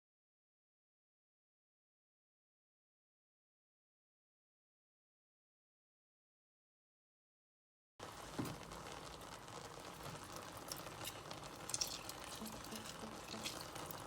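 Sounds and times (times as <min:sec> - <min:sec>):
stew bubbling and popping: 0:08.0 - 0:14.0.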